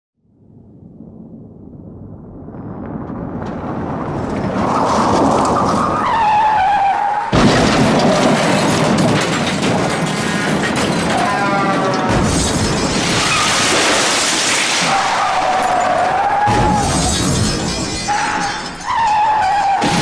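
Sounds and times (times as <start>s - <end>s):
car crash: 0.6s - 20.0s
car engine and road noise: 1.6s - 11.1s
crunching debris: 2.2s - 20.0s
tyres squealing: 5.2s - 8.8s, 17.9s - 20.0s.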